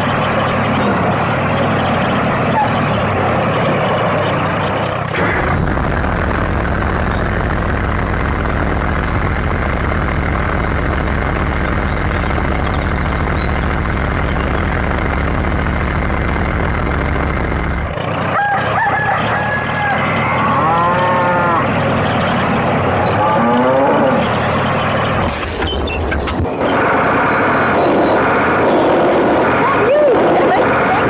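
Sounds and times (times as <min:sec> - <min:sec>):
engine rumble: 0:00.0 - 0:31.0
rooster crowing: 0:18.2 - 0:21.6.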